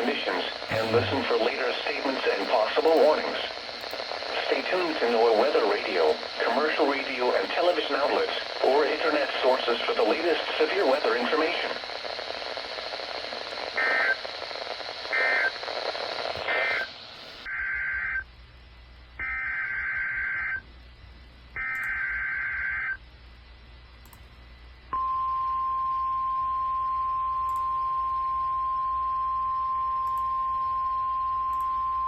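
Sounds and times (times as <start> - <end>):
steady alarm tone: 0.7 - 1.4
digital data bursts: 0.7 - 1.5.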